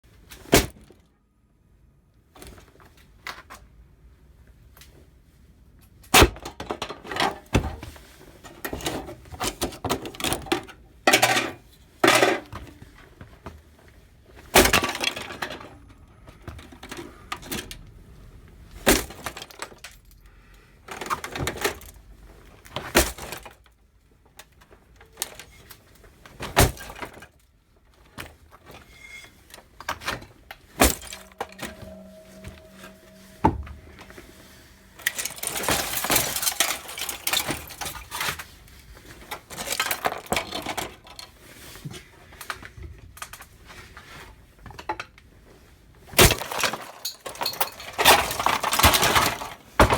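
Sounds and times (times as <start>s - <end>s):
plastic parts cracking and clattering: 35.1s - 38.5s, 39.4s - 41.3s, 46.2s - 49.9s.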